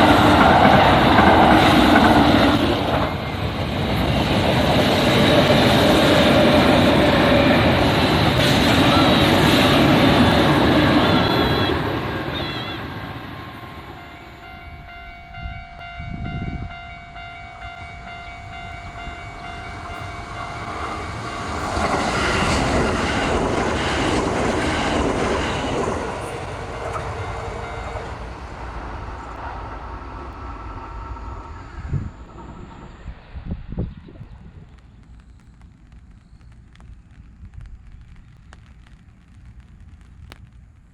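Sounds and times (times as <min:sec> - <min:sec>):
train rumble and wheel noise: 0:00.0 - 0:35.1
level-crossing alarm ringing: 0:07.4 - 0:29.3.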